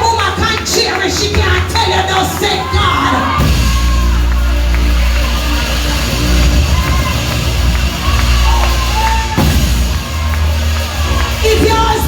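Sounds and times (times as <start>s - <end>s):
church band music: 0.0s - 12.0s.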